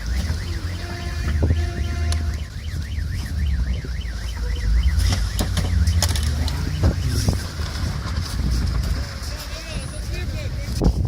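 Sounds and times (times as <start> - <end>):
car alarm warbling: 0.0 - 7.6
steady low rumble: 0.0 - 11.0.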